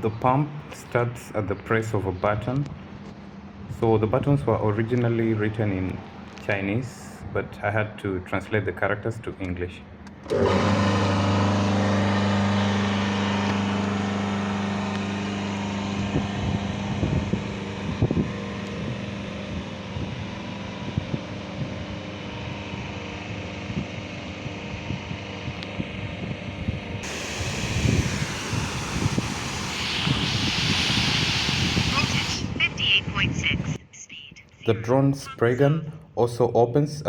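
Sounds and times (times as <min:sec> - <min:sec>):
water pump humming: 0:10.2 - 0:32.6
wind noise on microphone: 0:16.0 - 0:22.0, 0:24.6 - 0:33.8.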